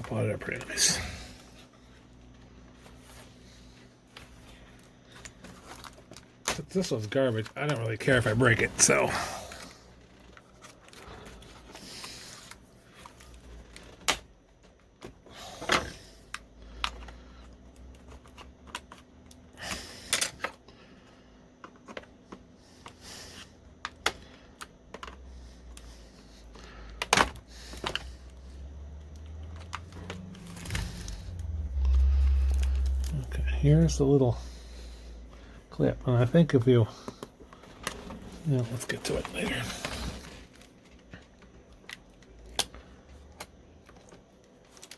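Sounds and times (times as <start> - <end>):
low handling rumble: 28.0 - 36.2.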